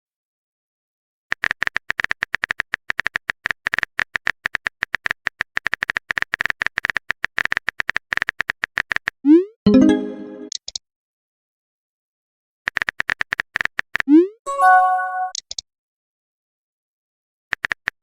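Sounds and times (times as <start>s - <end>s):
synth chord: 9.7s - 10.5s.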